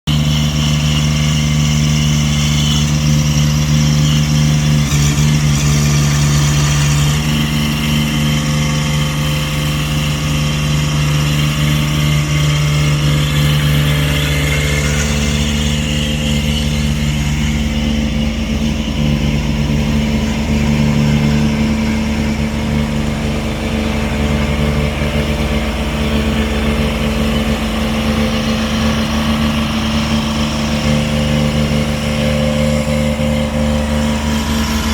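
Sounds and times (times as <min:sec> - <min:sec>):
motor engine running: 0:00.0 - 0:34.9.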